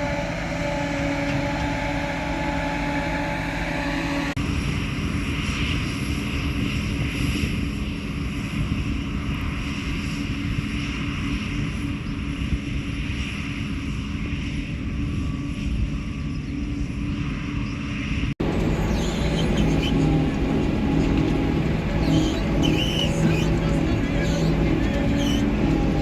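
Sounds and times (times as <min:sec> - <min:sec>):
faint high whines: 0:00.0 - 0:04.4, 0:18.4 - 0:26.0
heavy diesel machinery rumbling: 0:00.0 - 0:04.4, 0:18.4 - 0:26.0.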